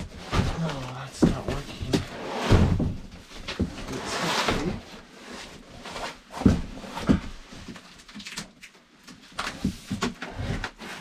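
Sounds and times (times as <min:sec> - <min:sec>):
dull thumps and knocks on cardboard box: 0:00.0 - 0:03.9, 0:06.0 - 0:07.7.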